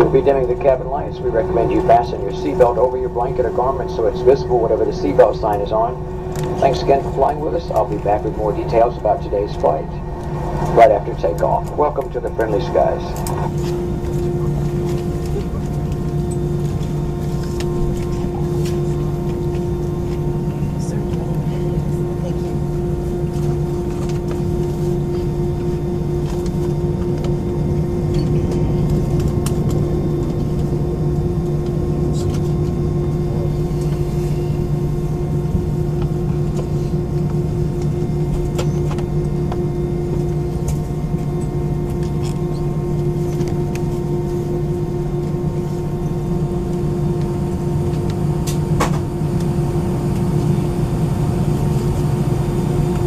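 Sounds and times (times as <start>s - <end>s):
air conditioning hum: 0.0s - 53.0s
airliner engines idling: 0.0s - 53.0s
faint clicks in cabin: 26.2s - 27.4s.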